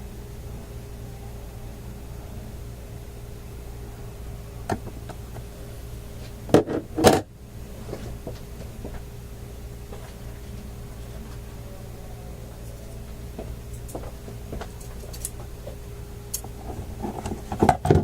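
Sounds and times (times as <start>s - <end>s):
low hum: 0.0s - 18.0s.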